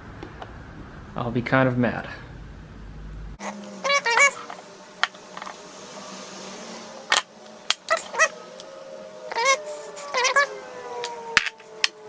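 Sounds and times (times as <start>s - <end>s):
dog whining: 3.4s - 4.7s, 7.8s - 8.6s, 9.3s - 12.0s.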